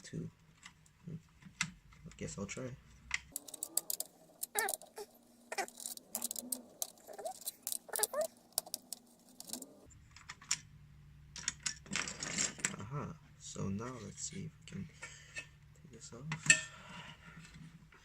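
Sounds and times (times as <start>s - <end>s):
short squeaks: 3.5s - 9.9s
screwdriver metallic clicks and rattles: 5.6s - 9.7s.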